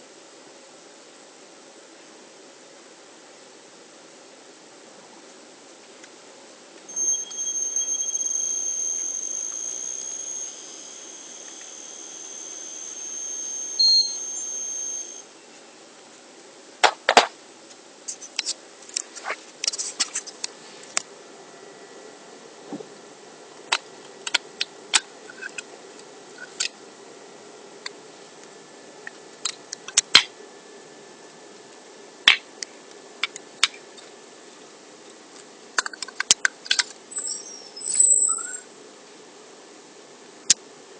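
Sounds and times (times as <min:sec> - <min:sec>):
electric motor whining: 0:06.9 - 0:15.2.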